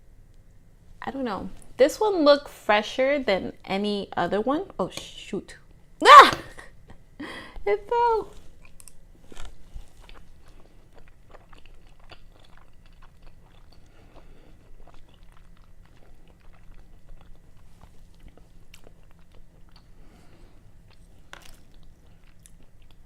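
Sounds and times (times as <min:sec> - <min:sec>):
person chewing: 0:08.3 - 0:23.0.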